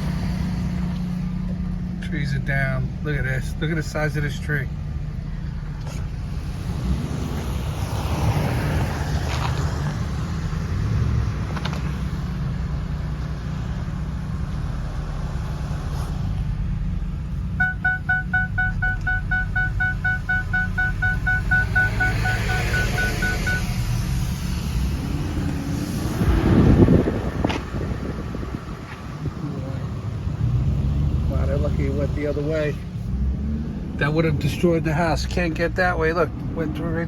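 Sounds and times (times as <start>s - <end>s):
car driving rumble: 0.0s - 37.0s
rapid electronic chime beeps: 17.6s - 23.7s.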